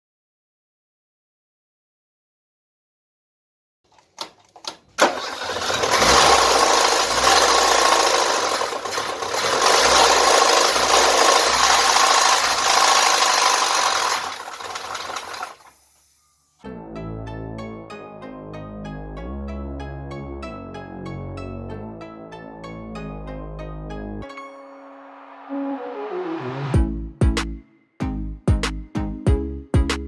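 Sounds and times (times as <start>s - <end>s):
engine starter clicks: 3.9s - 16.0s
engine running loudly: 5.0s - 15.7s.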